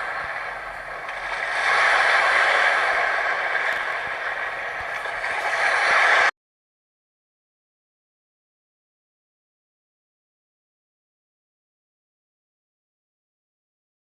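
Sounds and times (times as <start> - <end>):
sea waves washing ashore: 0.0 - 6.3.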